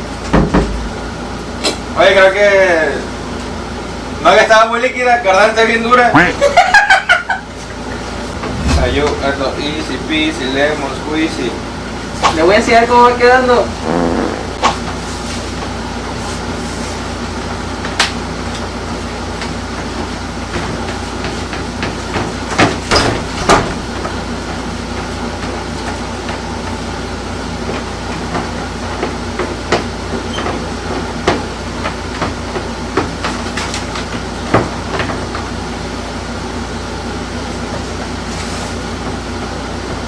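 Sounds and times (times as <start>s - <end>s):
steady hum: 8.0s - 10.4s.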